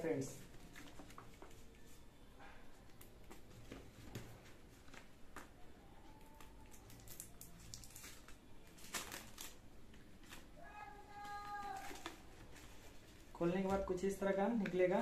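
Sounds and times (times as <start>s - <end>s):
packaging clicks and rustles: 0.5s - 2.0s, 2.7s - 13.9s
packaging crinkling: 2.9s - 13.3s.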